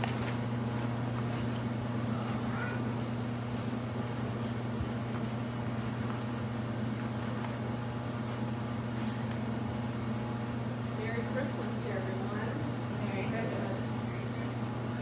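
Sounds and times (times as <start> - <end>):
low electrical hum: 0.0 - 15.0.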